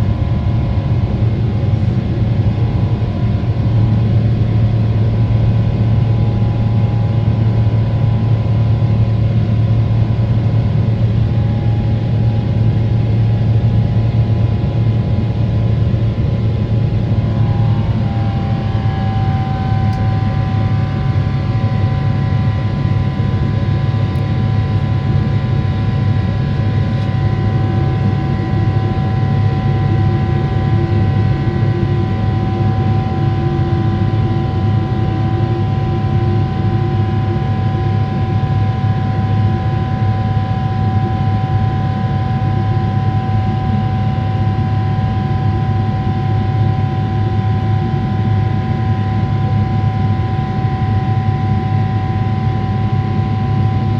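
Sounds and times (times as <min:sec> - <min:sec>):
jet engines droning: 0:00.0 - 0:53.9
whining fan tones: 0:00.0 - 0:53.9.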